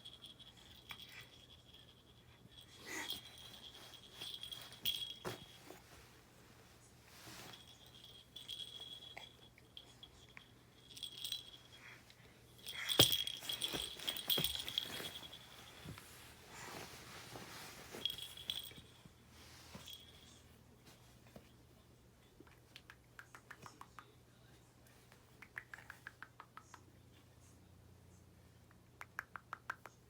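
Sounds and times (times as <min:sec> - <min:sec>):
baby rattle jingling: 0:00.0 - 0:05.8, 0:07.5 - 0:12.0, 0:12.6 - 0:15.9, 0:17.9 - 0:19.0.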